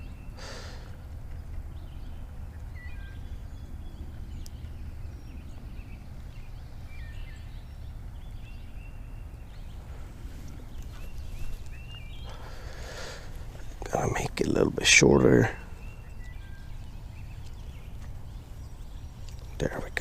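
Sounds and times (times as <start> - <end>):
short bird calls: 0.0 - 1.1, 8.9 - 20.0
steady low rumble: 0.0 - 20.0.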